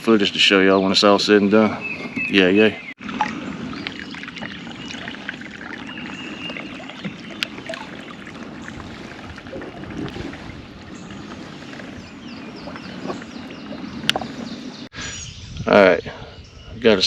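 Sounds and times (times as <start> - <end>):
water trickling and splashing: 3.0 - 14.9.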